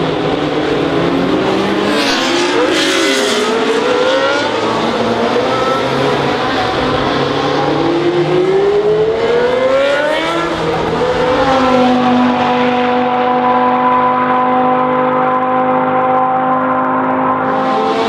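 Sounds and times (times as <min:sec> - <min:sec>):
racing car engine accelerating: 0:00.0 - 0:18.0.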